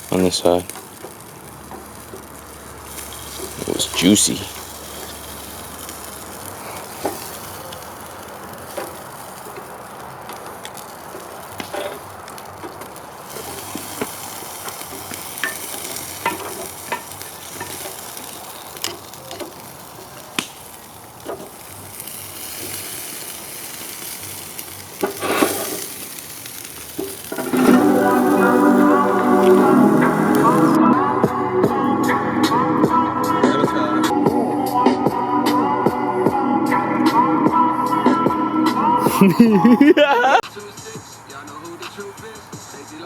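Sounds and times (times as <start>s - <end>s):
fire pops and crackles: 0.0s - 30.8s
meat sizzling on a grill: 0.0s - 30.8s
music: 27.2s - 43.0s.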